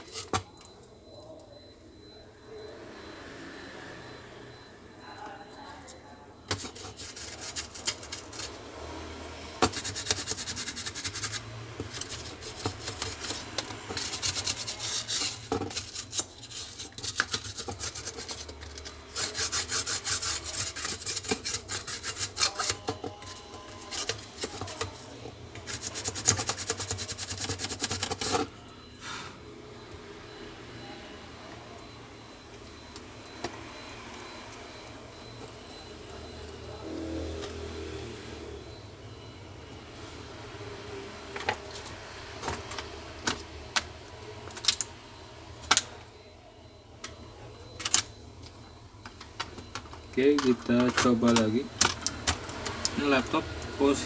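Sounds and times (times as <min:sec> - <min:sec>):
brush scrubbing circuit board: 0:06.5 - 0:08.7, 0:09.6 - 0:28.6.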